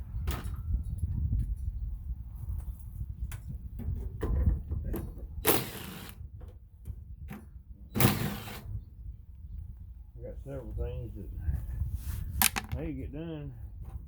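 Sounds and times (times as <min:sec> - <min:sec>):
metallic clicks and knocks: 0:12.4 - 0:12.8.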